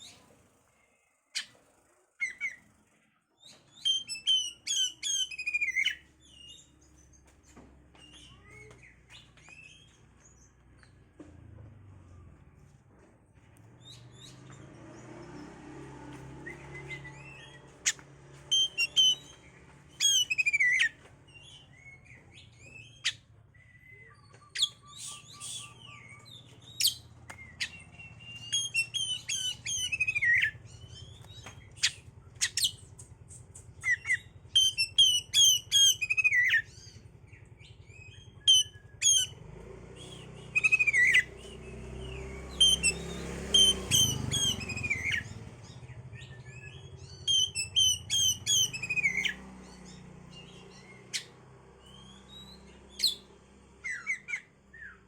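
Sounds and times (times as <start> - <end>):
bird singing chirped phrases: 8.0 - 10.0.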